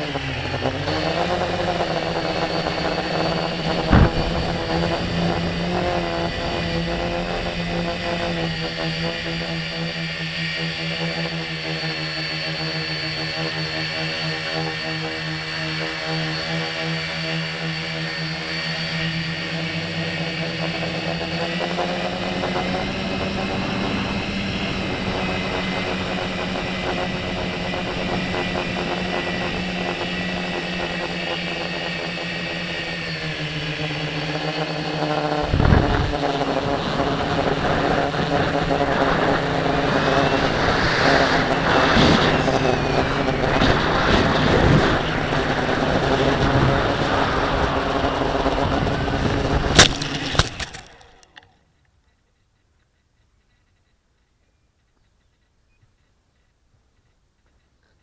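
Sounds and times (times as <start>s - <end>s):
drone motors whining: 0.0s - 51.6s
sudden thump: 3.8s - 4.7s.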